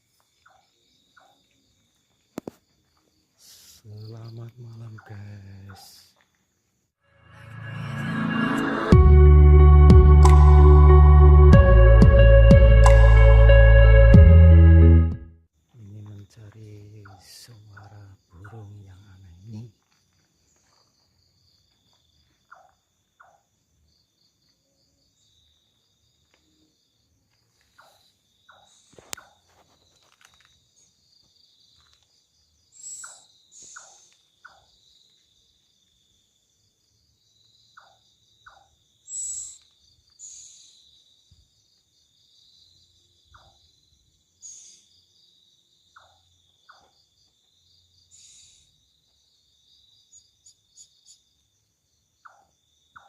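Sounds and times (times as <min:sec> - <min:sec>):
night bird calling: 0:00.0 - 0:01.8, 0:03.4 - 0:06.2, 0:16.6 - 0:19.8, 0:22.4 - 0:23.6, 0:27.6 - 0:35.3, 0:37.3 - 0:41.6, 0:42.2 - 0:51.5, 0:52.1 - 0:53.0
crickets chirring: 0:00.0 - 0:08.9, 0:15.6 - 0:53.0.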